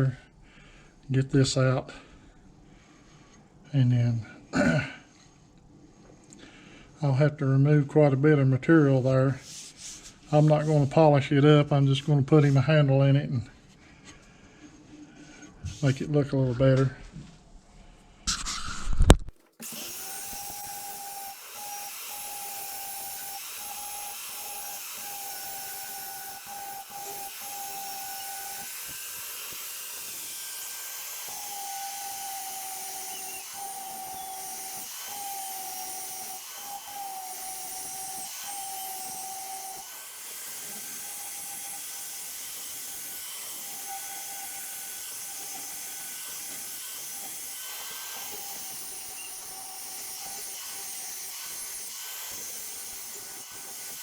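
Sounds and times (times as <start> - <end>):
electric grinder grinding steel: 18.4 - 54.0.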